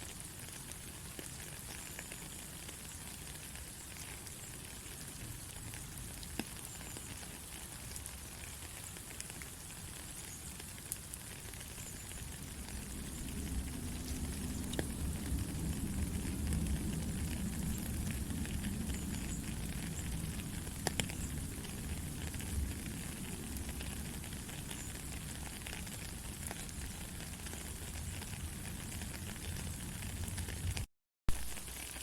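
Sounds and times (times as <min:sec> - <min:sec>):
steady rain falling: 0:00.0 - 0:32.0
low rumble: 0:12.4 - 0:20.6.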